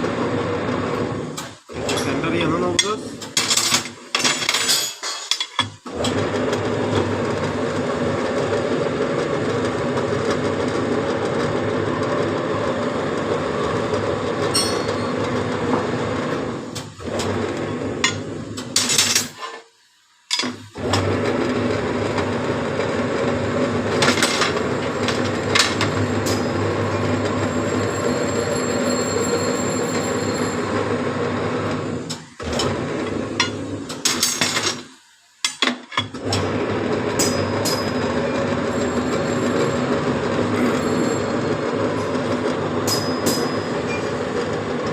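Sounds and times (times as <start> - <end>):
machine tool running: 20.5 - 33.8.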